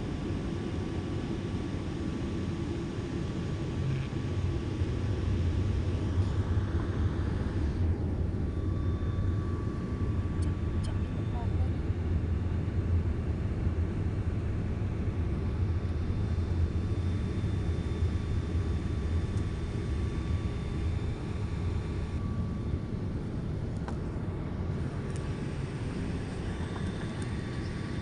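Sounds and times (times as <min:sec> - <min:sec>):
faint steady whine: 0:00.0 - 0:28.0
aircraft cabin engine rumble: 0:00.1 - 0:28.0.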